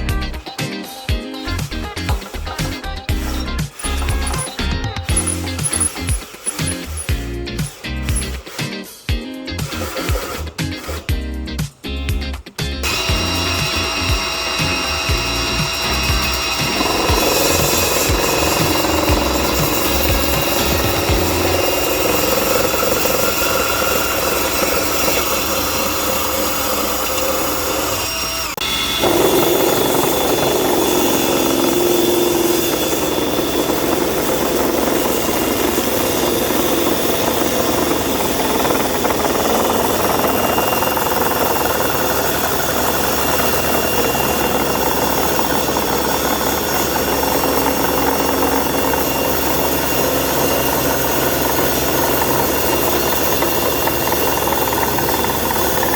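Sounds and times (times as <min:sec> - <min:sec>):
table saw and drill running: 0:00.0 - 0:55.9.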